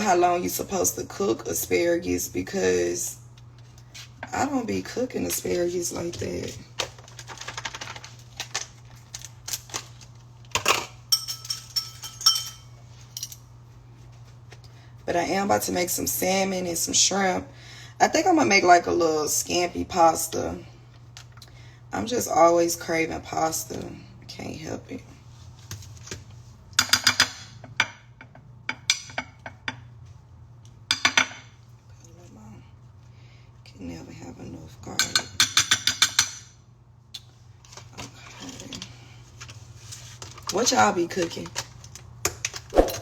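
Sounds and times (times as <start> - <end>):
low steady hum: 0.0 - 43.0
utensils and dishes clattering: 10.6 - 13.4.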